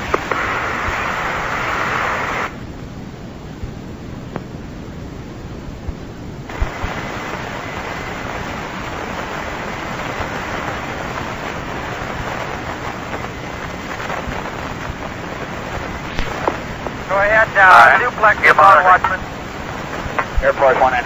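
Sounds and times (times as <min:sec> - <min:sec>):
radio static hiss: 0:00.0 - 0:21.0.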